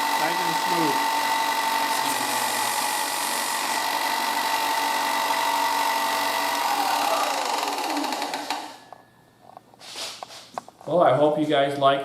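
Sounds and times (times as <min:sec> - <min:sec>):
belt sander motor whining: 0:00.0 - 0:09.0.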